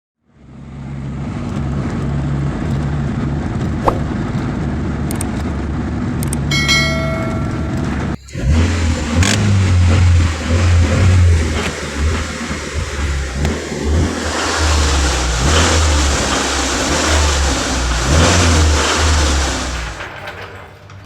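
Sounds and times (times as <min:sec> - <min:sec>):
car engine running: 0:00.4 - 0:20.1
short metallic ring: 0:06.5 - 0:08.1.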